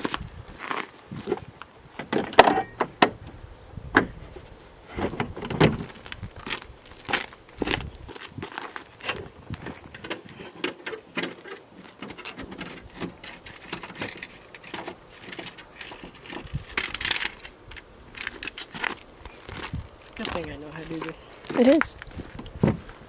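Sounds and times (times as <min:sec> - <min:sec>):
metal tools clicking and rattling: 0:02.0 - 0:03.0, 0:09.9 - 0:19.0
metal scrape: 0:10.3 - 0:18.8.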